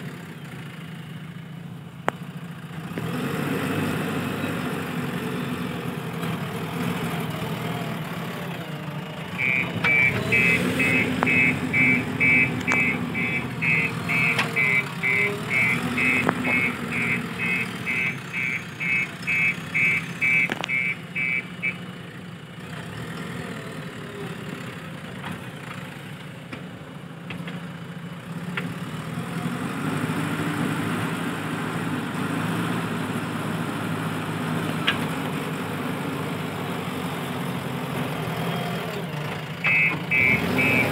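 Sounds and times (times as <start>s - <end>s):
diesel engine running: 0.0s - 40.9s
reversing alarm beeps: 9.4s - 21.8s, 39.6s - 40.9s.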